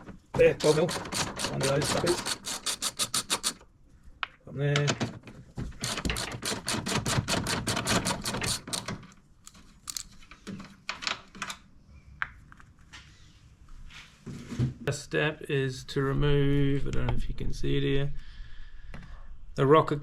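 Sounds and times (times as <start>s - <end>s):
ratchet wrench clicking: 0.6s - 3.6s, 7.8s - 8.9s.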